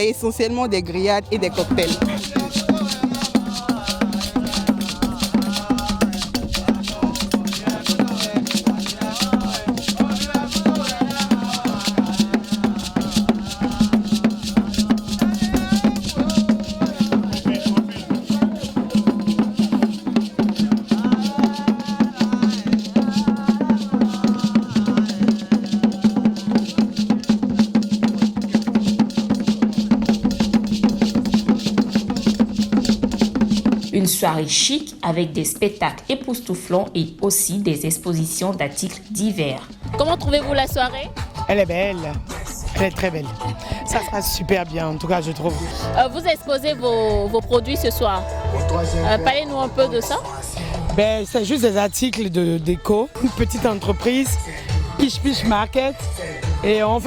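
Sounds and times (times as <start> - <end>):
upbeat music: 0.0 - 27.1, 38.8 - 57.0
shaker: 1.4 - 48.4, 53.1 - 57.0
sharp percussion clicks: 1.5 - 35.0, 53.2 - 57.0
low drum notes: 39.8 - 51.6.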